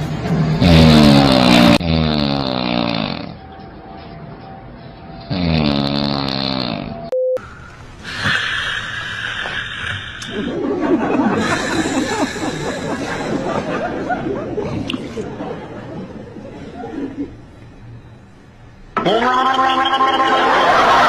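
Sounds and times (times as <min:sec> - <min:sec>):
people laughing: 0:10.2 - 0:17.6, 0:19.0 - 0:21.0.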